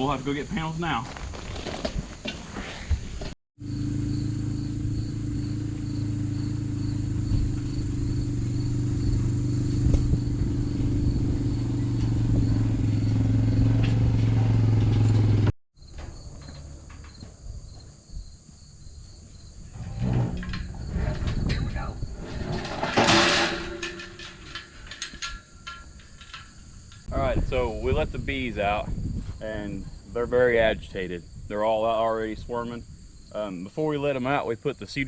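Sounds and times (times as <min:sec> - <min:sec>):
outdoor ambience: 0:00.0 - 0:35.0
insects chirping: 0:03.6 - 0:14.5, 0:15.8 - 0:35.0
vehicle engine running: 0:03.6 - 0:15.5.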